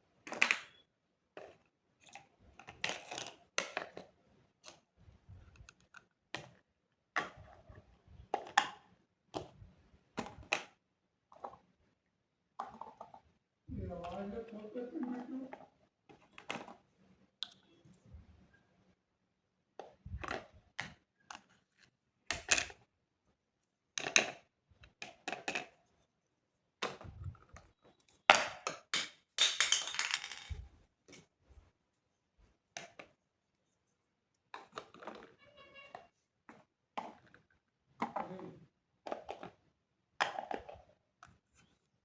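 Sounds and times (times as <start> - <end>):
small toy pieces tapping and clicking: 28.3 - 30.6.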